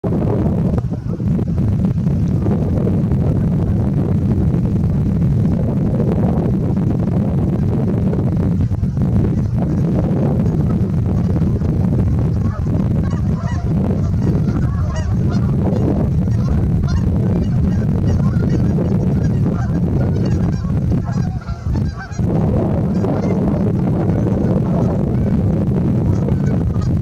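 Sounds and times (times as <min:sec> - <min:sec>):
steady low rumble: 0:00.0 - 0:27.0
goose cackling and honking: 0:09.3 - 0:11.7, 0:12.3 - 0:25.4, 0:26.0 - 0:27.0.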